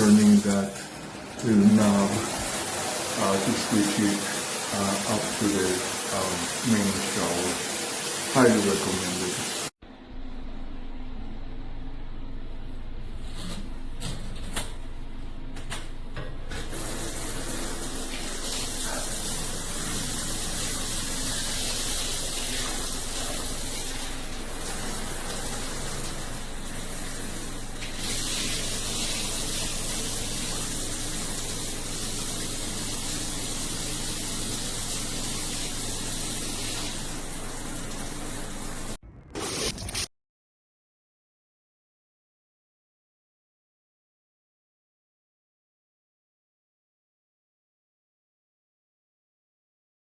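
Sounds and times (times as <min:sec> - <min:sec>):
shower water spraying: 0:00.0 - 0:09.7, 0:15.7 - 0:40.1.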